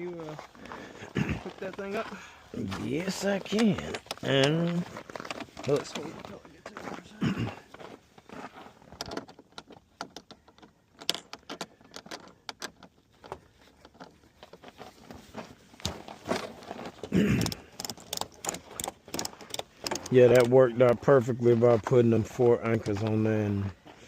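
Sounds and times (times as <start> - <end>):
strap hardware clicking and jangling: 3.1 - 6.4, 8.2 - 15.0, 15.7 - 20.6.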